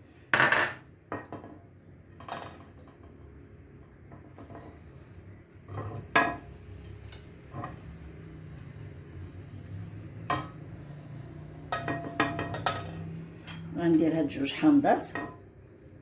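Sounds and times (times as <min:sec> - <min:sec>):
bowls and utensils clinking: 0:11.6 - 0:13.8.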